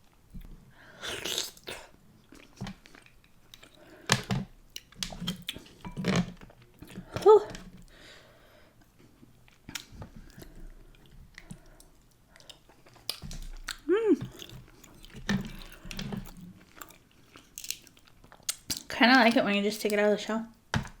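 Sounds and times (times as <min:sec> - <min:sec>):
person chewing: 0:01.0 - 0:04.0, 0:08.8 - 0:18.9.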